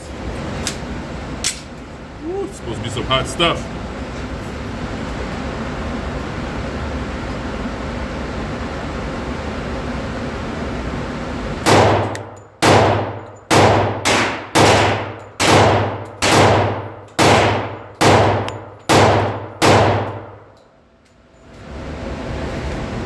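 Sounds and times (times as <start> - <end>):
pistol shots echoing indoors: 11.6 - 20.7.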